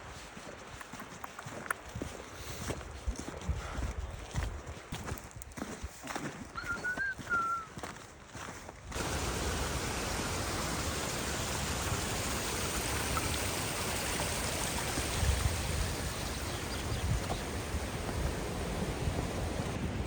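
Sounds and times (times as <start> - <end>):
stream rushing: 9.0 - 20.0.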